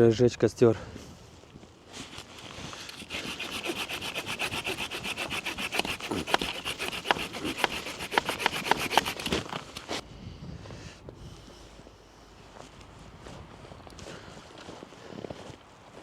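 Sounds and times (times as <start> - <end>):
hand saw cutting wood: 2.9 - 10.0.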